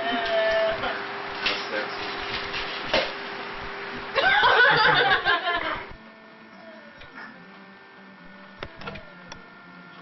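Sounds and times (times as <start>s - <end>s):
faint steady hum: 0.0s - 10.0s
person laughing: 4.2s - 5.9s.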